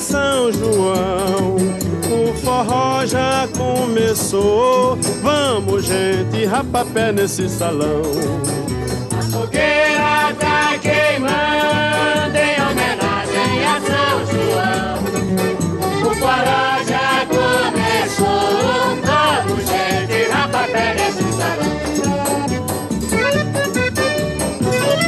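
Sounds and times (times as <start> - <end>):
accordion melody: 0.0 - 25.0.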